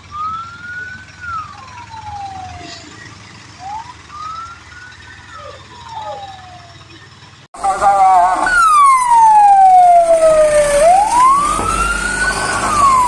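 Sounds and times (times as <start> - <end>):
fire engine siren wailing: 0.0 - 13.0.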